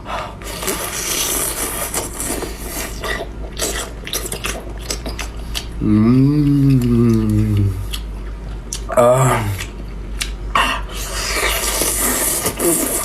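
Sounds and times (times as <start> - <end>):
wet crunchy chewing: 0.4 - 5.8, 6.4 - 13.0
person humming: 5.8 - 7.9, 8.9 - 9.7.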